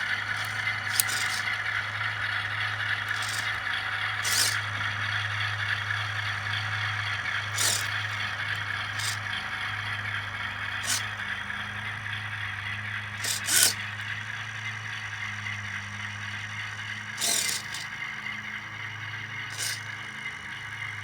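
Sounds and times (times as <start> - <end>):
rattling scraping hiss: 0.0 - 14.2, 16.3 - 21.0
steady low hum: 0.0 - 21.0
sharp clicks: 0.2 - 1.6, 10.8 - 11.3, 13.2 - 14.1, 19.5 - 20.0.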